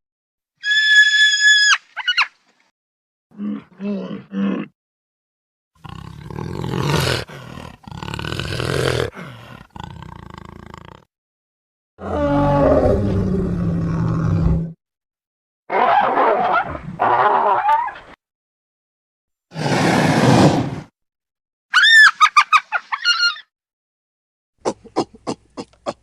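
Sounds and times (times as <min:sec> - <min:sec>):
animal roaring: 0:05.8 - 0:11.1, 0:12.0 - 0:14.8.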